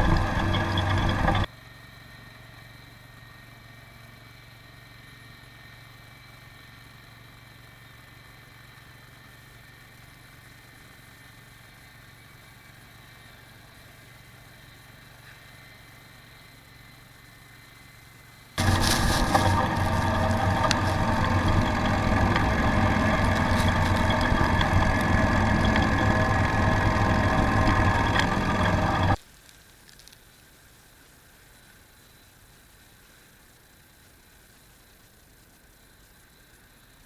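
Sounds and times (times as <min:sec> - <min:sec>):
faint lawn tractor engine idling: 0:00.0 - 0:29.2.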